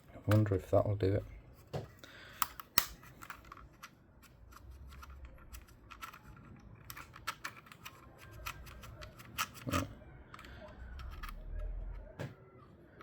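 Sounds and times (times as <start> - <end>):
faint low hum: 0.0 - 13.0
plastic parts clicking: 2.3 - 12.1.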